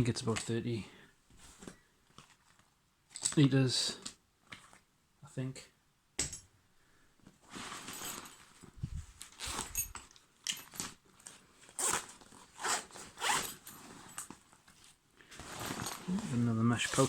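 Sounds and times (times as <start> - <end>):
nylon fabric rustling: 7.4 - 17.0
backpack zipper pulled open: 9.3 - 10.0, 11.8 - 13.8, 15.4 - 16.3.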